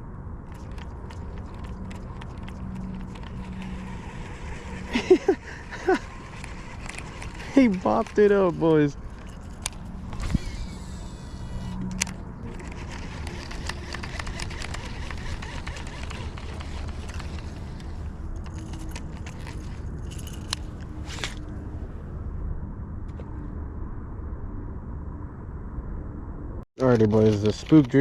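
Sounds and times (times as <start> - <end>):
low outdoor rumble: 0.0 - 28.0
faint clicks and crackles: 0.5 - 10.4, 11.6 - 21.5.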